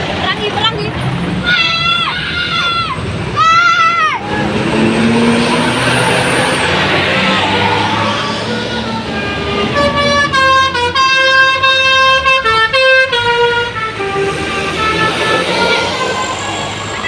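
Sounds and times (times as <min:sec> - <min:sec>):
bus musical horn: 0:06.3 - 0:17.0.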